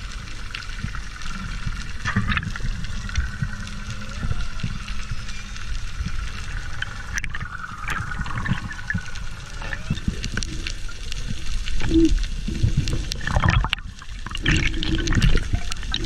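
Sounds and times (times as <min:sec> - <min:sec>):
small clicks and crackles: 0:00.0 - 0:16.0
steady low rumble: 0:00.0 - 0:16.0
water sloshing and gurgling: 0:00.0 - 0:16.0.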